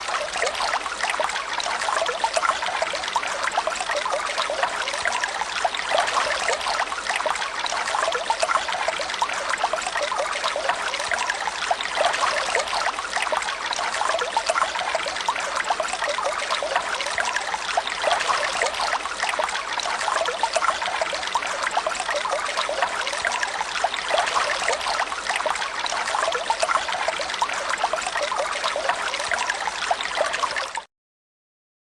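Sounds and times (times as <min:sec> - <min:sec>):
water trickling: 0:00.0 - 0:30.9.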